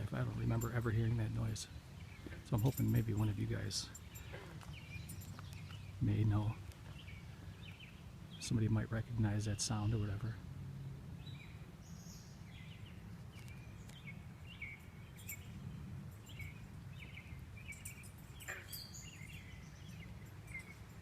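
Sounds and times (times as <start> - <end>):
steady low rumble: 0.0 - 18.5
high chirping animal calls: 16.2 - 20.9.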